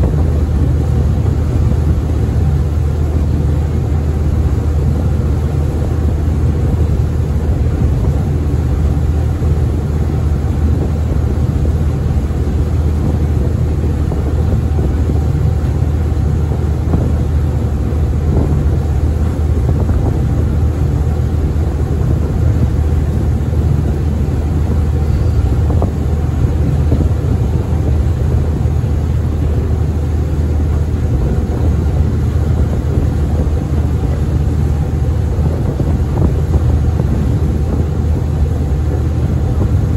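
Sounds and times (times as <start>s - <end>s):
ferry engine droning: 0.0s - 39.9s
rushing noise: 16.8s - 39.9s.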